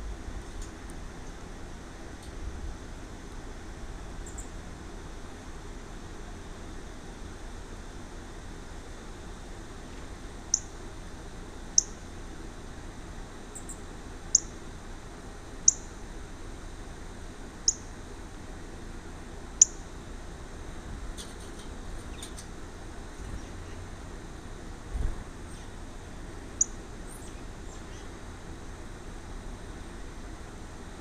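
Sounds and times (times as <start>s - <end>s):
small bird chirping: 4.2s - 4.6s, 10.5s - 10.8s, 11.7s - 12.0s, 13.5s - 14.6s, 15.6s - 16.0s, 17.6s - 18.0s, 19.6s - 19.9s, 25.5s - 25.8s, 26.6s - 28.2s.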